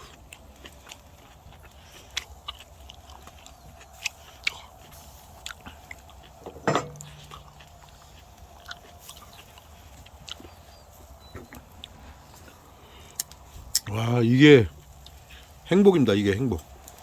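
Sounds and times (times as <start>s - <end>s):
person chewing meat: 0.0s - 13.9s, 14.8s - 15.7s.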